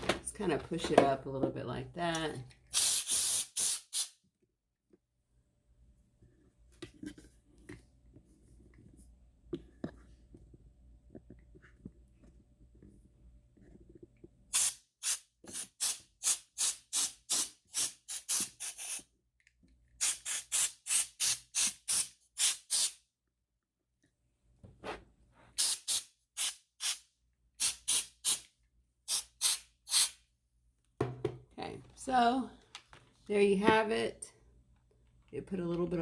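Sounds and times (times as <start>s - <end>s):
compressed air duster hissing: 2.8s - 4.1s, 25.6s - 27.0s, 29.1s - 30.2s.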